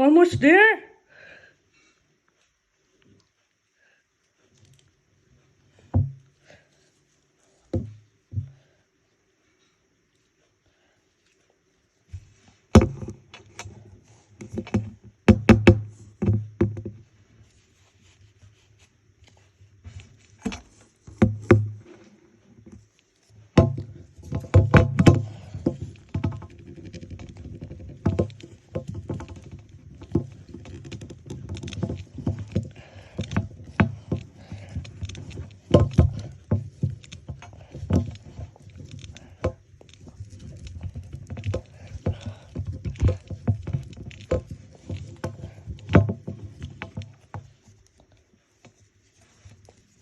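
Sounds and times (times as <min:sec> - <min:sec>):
scratching and rustling doll hair: 0:17.4 - 0:21.0, 0:25.3 - 0:50.0.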